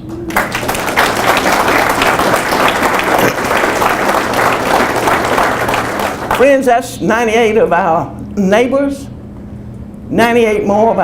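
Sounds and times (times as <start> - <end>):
audience applauding: 0.0 - 6.6.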